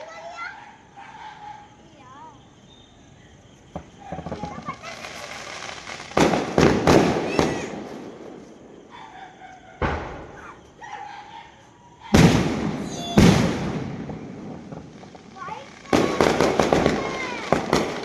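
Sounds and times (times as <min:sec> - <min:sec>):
fireworks banging with rumbling echo: 0:03.4 - 0:10.8, 0:12.0 - 0:18.0.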